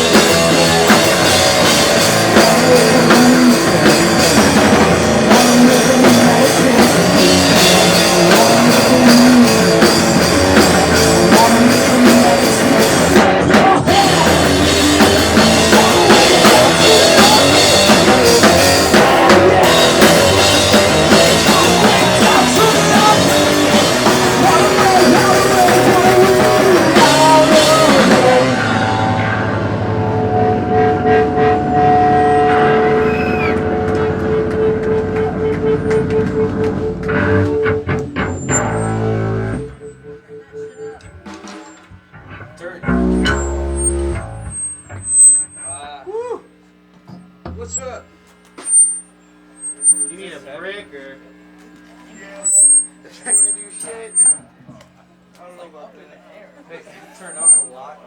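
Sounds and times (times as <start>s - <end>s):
drum kit with crashing cymbals: 0.0s - 33.6s, 40.8s - 45.9s
distorted electric guitars: 0.0s - 55.3s, 57.2s - 57.9s
amp ringing tones: 0.0s - 55.7s.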